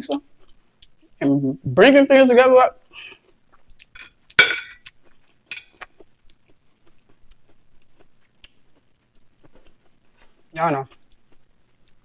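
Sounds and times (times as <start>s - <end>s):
cutlery clinking on plate: 4.0s - 4.8s, 5.5s - 5.7s.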